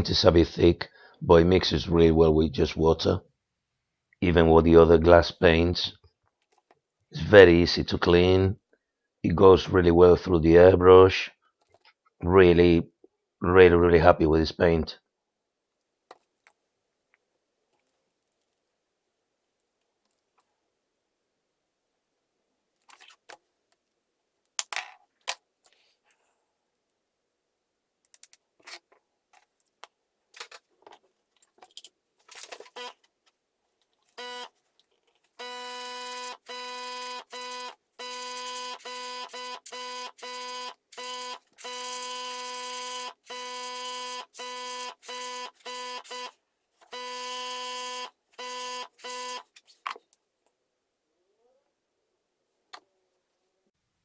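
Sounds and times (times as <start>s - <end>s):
airbrush compressor buzzing: 34.2s - 34.5s, 35.4s - 49.5s.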